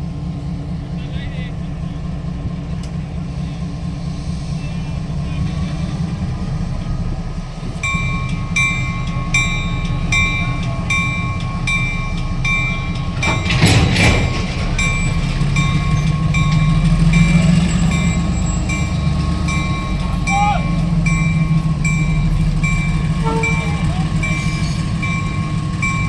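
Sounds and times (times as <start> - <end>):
diesel locomotive rumbling: 0.0 - 26.0
locomotive bell ringing: 7.6 - 26.0.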